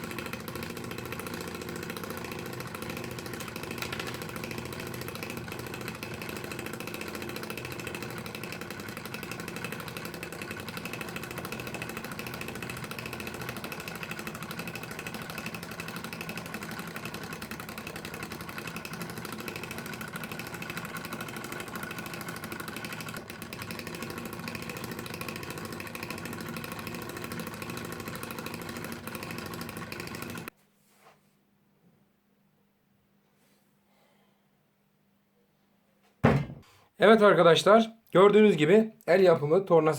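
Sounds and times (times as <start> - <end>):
electric motor humming: 0.0 - 30.5.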